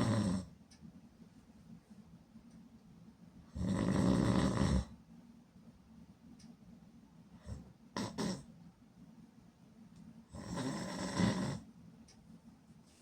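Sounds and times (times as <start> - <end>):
person snoring: 0.0 - 0.5, 3.5 - 4.9, 7.4 - 8.5, 10.3 - 11.6.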